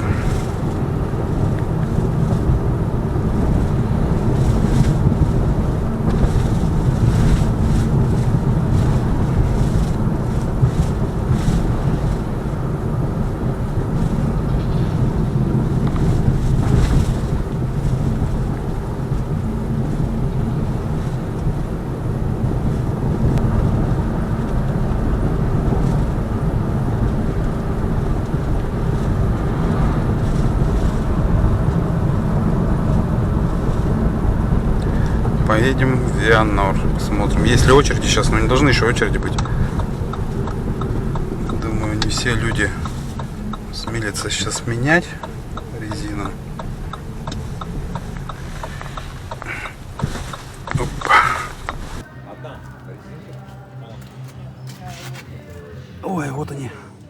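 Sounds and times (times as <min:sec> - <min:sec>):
road and tyre rumble in car: 0:00.0 - 0:57.0
thuds from bumps: 0:39.2 - 0:52.0.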